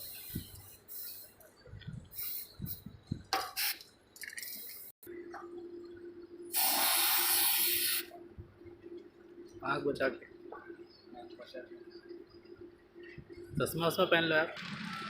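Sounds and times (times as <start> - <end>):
aerosol can spraying: 6.5 - 8.1.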